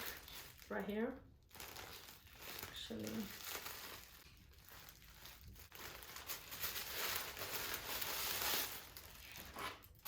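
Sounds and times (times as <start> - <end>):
plastic wrap crinkling: 0.0 - 10.0.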